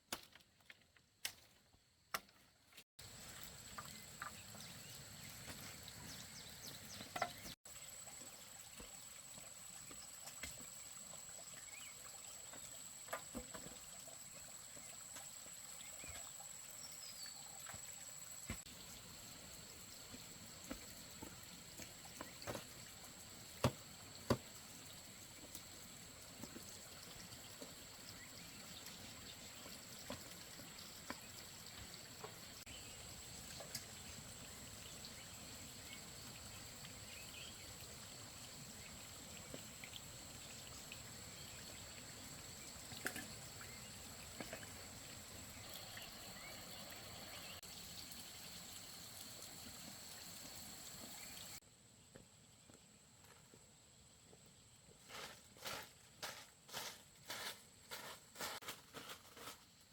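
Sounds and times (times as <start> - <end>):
water trickling and pouring: 3.0 - 51.6
small clicks and splashes: 3.1 - 6.2, 19.5 - 46.5.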